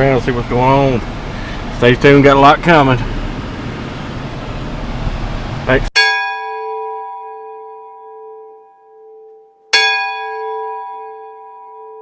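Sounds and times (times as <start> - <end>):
bell-like chime ringing: 6.0 - 12.0.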